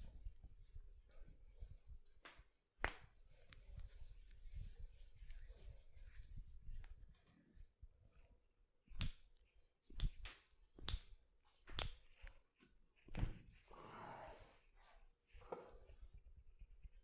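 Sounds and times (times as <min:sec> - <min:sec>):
hands rubbing on skin: 0:00.0 - 0:13.7.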